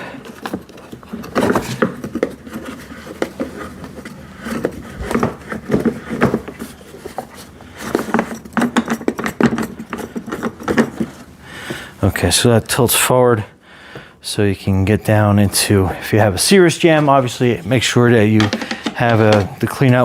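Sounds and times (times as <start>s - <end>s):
plastic housing scraping: 0.0s - 11.4s, 18.1s - 20.0s
plastic knocks: 18.4s - 19.5s.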